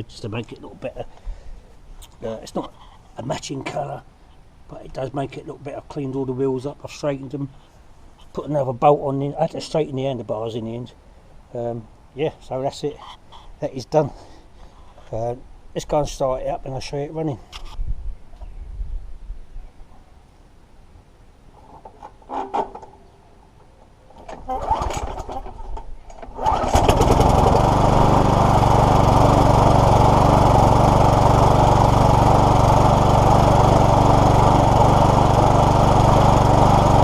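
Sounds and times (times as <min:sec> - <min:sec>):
lawnmower engine running: 0:24.2 - 0:37.0.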